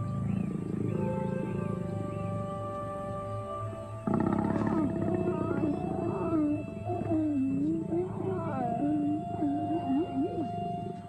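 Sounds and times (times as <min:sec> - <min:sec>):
soft background music: 0:00.0 - 0:11.0
lions growling and snarling: 0:04.0 - 0:11.0.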